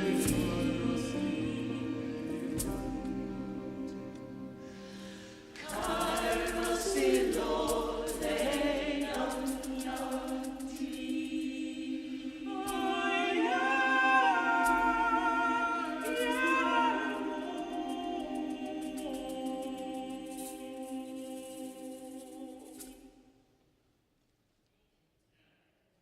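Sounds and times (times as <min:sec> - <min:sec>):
vocal ensemble singing in harmony: 0:00.0 - 0:23.3.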